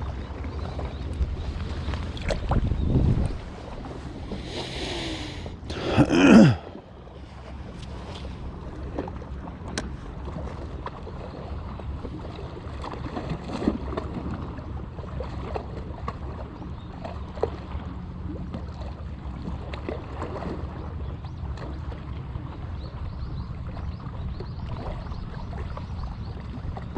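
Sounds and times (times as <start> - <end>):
boat engine hum: 0.0 - 26.9
water lapping and splashing: 0.0 - 26.9
wind on microphone: 1.1 - 5.4.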